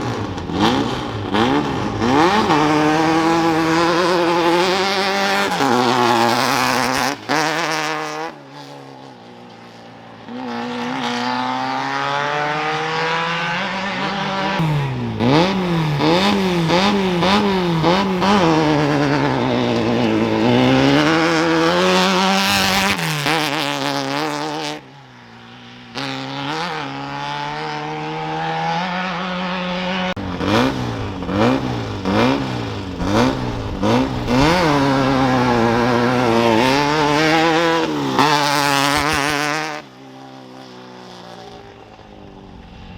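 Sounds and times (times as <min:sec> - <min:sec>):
engine throttle blips: 0:00.0 - 0:08.3, 0:12.9 - 0:24.6, 0:29.8 - 0:40.0
race vehicle engines revving: 0:00.0 - 0:42.9.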